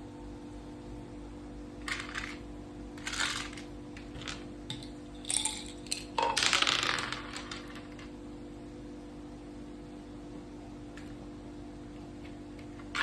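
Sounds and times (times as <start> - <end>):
dice rattling: 1.9 - 2.4, 3.0 - 8.1
game pieces clicking on board: 5.4 - 8.1.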